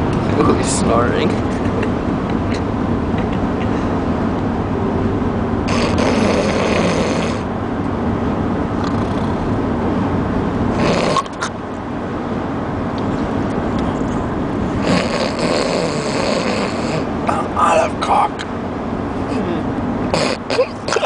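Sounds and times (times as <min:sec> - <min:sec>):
moving vehicle rumble: 0:00.0 - 0:21.0
person snoring: 0:14.8 - 0:17.1.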